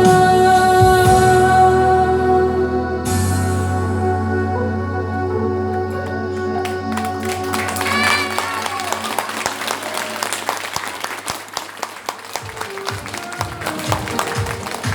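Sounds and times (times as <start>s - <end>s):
held chord of backing music: 0.0s - 9.3s, 12.5s - 14.9s
audience applauding: 6.0s - 14.9s.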